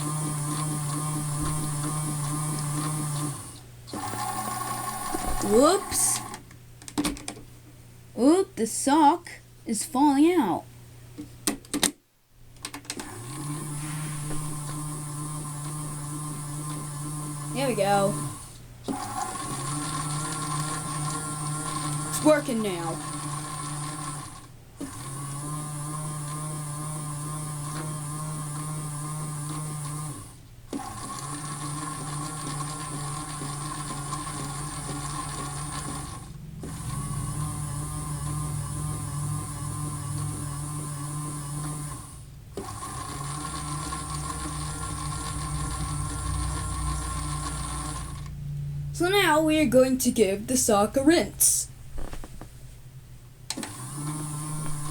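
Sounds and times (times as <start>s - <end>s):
toy washing machine motor humming: 0.0s - 6.4s, 12.8s - 48.4s, 53.5s - 54.9s.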